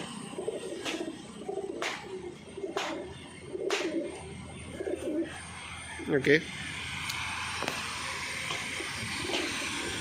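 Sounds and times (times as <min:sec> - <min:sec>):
pigeons cooing: 0:00.0 - 0:05.7, 0:08.6 - 0:10.0.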